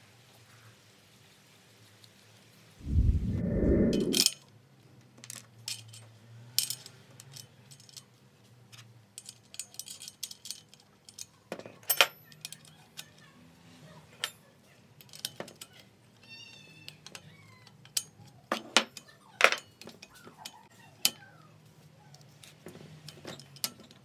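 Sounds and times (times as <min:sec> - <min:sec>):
low rumble: 0:02.8 - 0:04.2
small metal parts clinking: 0:05.2 - 0:13.2.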